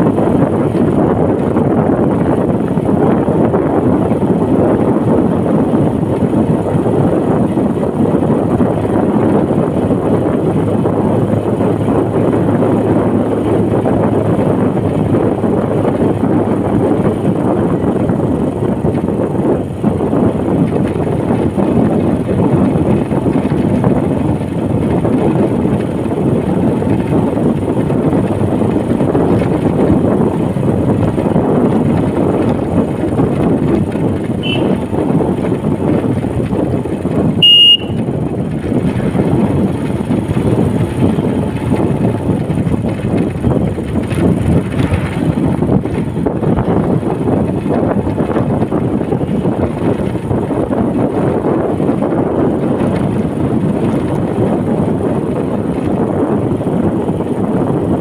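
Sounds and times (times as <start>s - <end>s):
motorcycle riding rumble: 0.0s - 58.0s
loud high beep: 37.4s - 38.0s.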